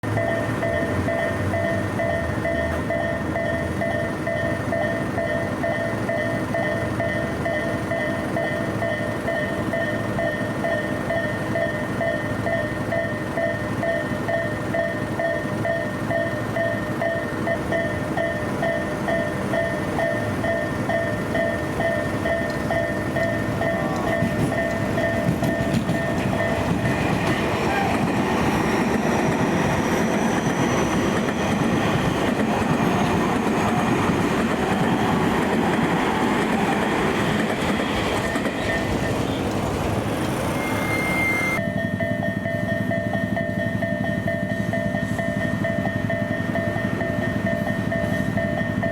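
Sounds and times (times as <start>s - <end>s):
level crossing warning bell: 0.0s - 48.9s
train rumble: 0.0s - 48.9s
wheels clacking over rail joints: 0.1s - 41.6s
high motor whine: 10.8s - 42.9s.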